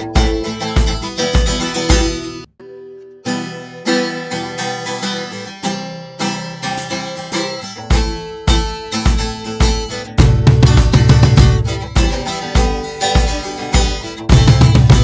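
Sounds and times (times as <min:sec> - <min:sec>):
heavy beat: 0:00.0 - 0:02.5, 0:06.2 - 0:15.0
strummed guitar music: 0:00.0 - 0:15.0.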